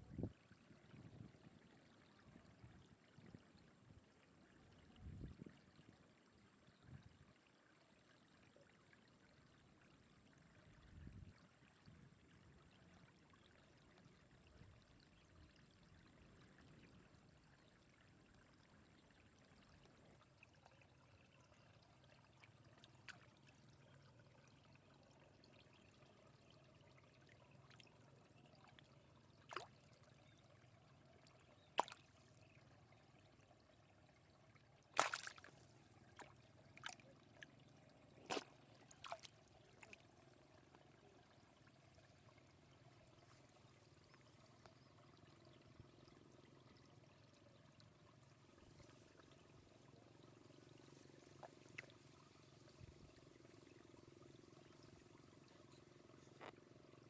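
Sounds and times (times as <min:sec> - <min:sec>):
faint trickling water: 0:00.0 - 0:57.0
sharp knocks or splashes: 0:31.8 - 0:32.0, 0:34.9 - 0:35.5, 0:38.2 - 0:39.3.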